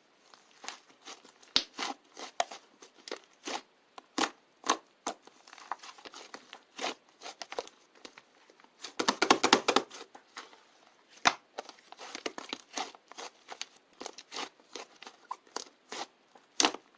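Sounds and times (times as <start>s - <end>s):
crinkling and crackling: 0.1s - 16.9s.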